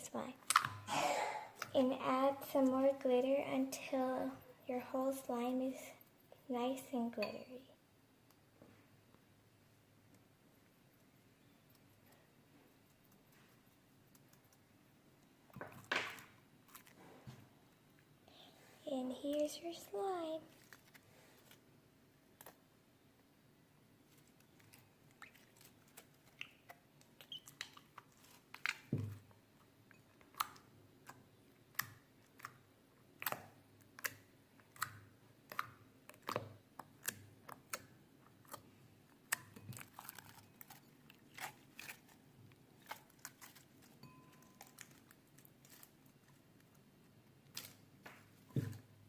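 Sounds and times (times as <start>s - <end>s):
wet clicks and pops: 0.4s - 0.8s, 26.0s - 28.9s, 33.2s - 38.6s.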